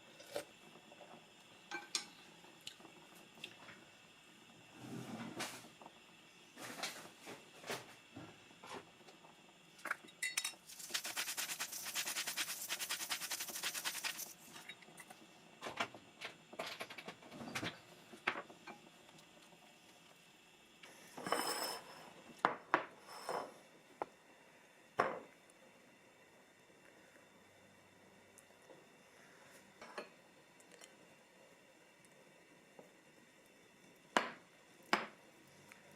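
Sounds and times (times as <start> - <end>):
utensils and dishes clinking: 9.9 - 10.8.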